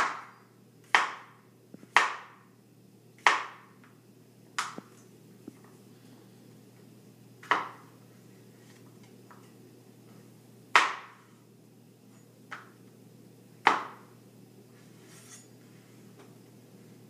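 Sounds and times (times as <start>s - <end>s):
knife chopping on cutting board: 0.0s - 2.4s, 3.2s - 3.7s, 7.4s - 7.9s, 13.6s - 14.1s
steady low hum: 0.0s - 17.0s.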